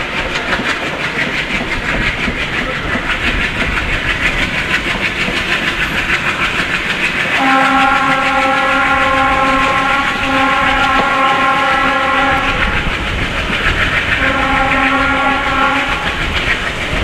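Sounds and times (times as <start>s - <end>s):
train wheels clattering over rails: 0.0s - 17.0s
locomotive horn blast: 7.4s - 12.8s, 14.2s - 16.1s.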